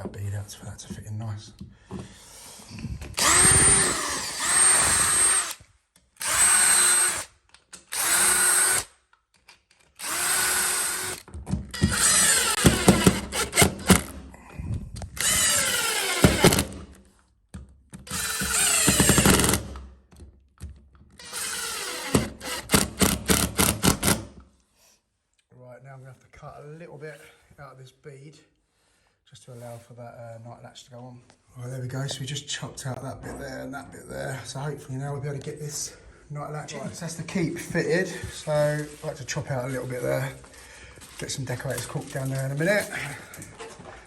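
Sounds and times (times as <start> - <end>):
power tool motor whining: 3.2 - 5.6, 10.0 - 14.2, 15.2 - 17.0, 18.1 - 19.7, 21.2 - 24.3.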